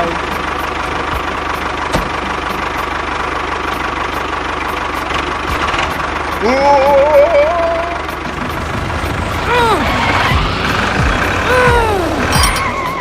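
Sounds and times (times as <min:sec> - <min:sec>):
engine idling with rapid knock: 0:00.0 - 0:06.4, 0:07.9 - 0:11.5
wavering voice-like sound: 0:09.3 - 0:12.5.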